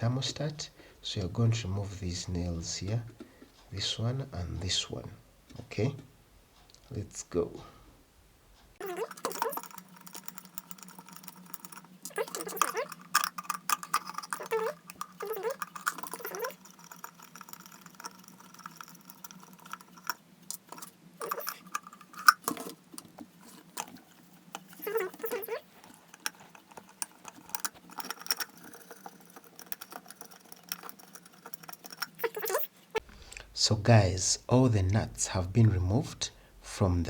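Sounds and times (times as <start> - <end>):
hand tool metallic clicks and scrapes: 8.8 - 33.5.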